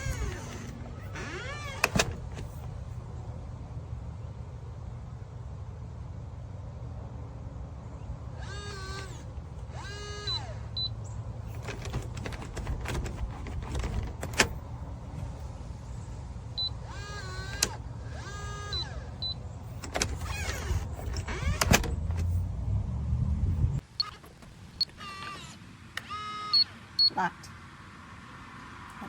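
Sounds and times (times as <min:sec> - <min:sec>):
small motor whirring: 0:00.0 - 0:02.6, 0:08.4 - 0:10.8, 0:16.6 - 0:22.4
steady low rumble: 0:20.8 - 0:23.8.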